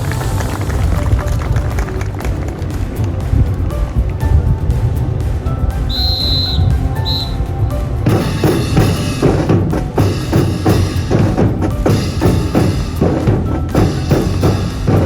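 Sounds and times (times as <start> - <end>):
marching drums: 0.0 - 15.0
whistle blast: 5.9 - 7.5.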